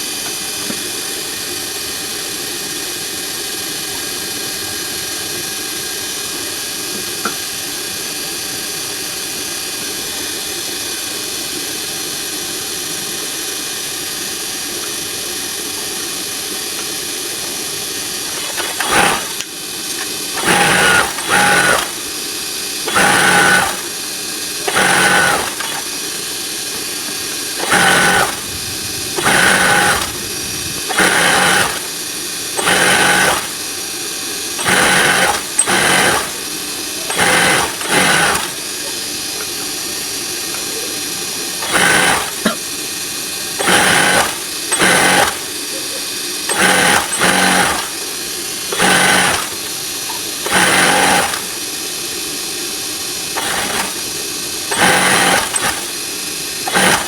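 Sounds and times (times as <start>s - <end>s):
motor hum: 15.3s - 57.0s
sewing machine stitching: 18.1s - 22.2s, 22.8s - 33.8s, 34.4s - 39.6s, 41.5s - 42.7s, 43.4s - 45.8s, 46.4s - 51.6s, 53.3s - 57.0s.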